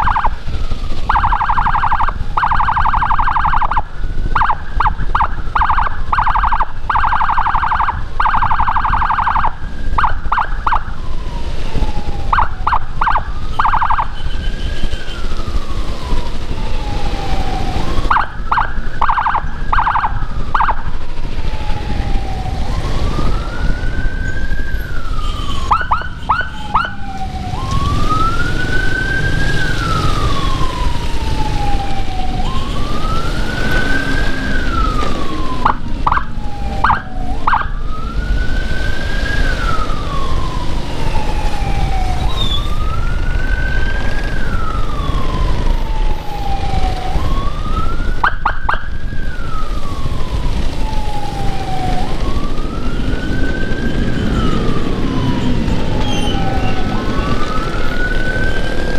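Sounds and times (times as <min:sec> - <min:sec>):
short siren blips: 0:00.0 - 0:00.4, 0:01.1 - 0:11.0, 0:12.3 - 0:14.9, 0:17.8 - 0:20.9, 0:22.2 - 0:30.8, 0:33.6 - 0:37.8, 0:41.6 - 0:43.0, 0:48.1 - 0:49.0, 0:53.8 - 0:57.3
electronic siren wailing: 0:00.0 - 0:58.9
road and engine noise: 0:00.0 - 0:58.9.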